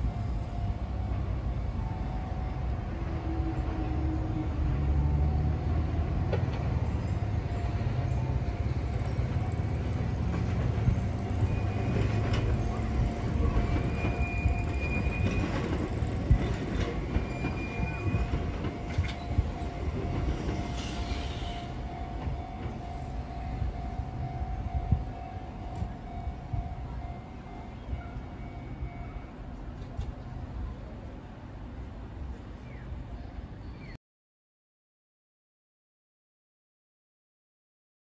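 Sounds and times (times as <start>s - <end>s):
crossing bell ringing tone: 0.0s - 29.6s
train wheels rumbling on rails: 0.0s - 32.6s
wheel squeals: 9.0s - 21.8s.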